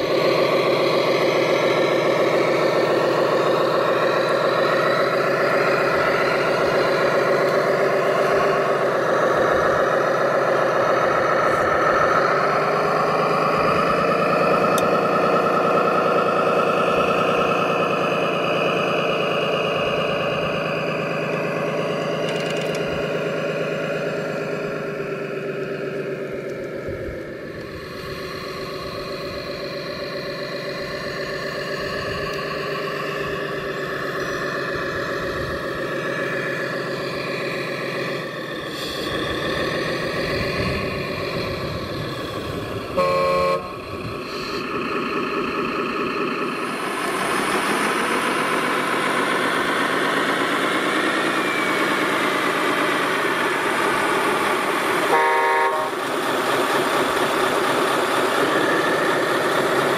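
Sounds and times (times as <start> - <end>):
model truck engine running: 0.0 - 59.9
horn toots: 42.9 - 43.9, 55.1 - 56.1.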